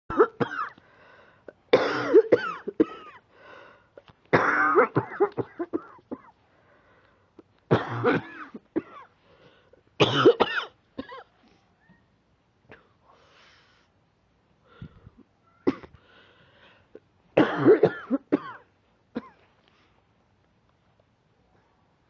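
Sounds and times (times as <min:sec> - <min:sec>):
woman coughing: 0:00.1 - 0:00.8, 0:01.7 - 0:03.2, 0:04.4 - 0:06.3, 0:07.7 - 0:09.1, 0:10.0 - 0:11.3, 0:17.4 - 0:19.4
woman breathing in: 0:00.8 - 0:01.5, 0:03.3 - 0:04.0, 0:06.5 - 0:07.3, 0:14.6 - 0:15.2, 0:16.0 - 0:17.0.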